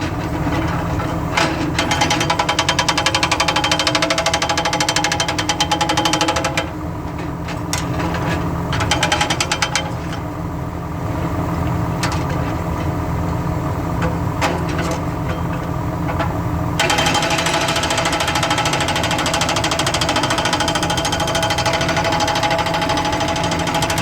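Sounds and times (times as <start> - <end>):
excavator engine running: 0.0 - 24.0
hydraulic breaker hammering: 16.8 - 24.0.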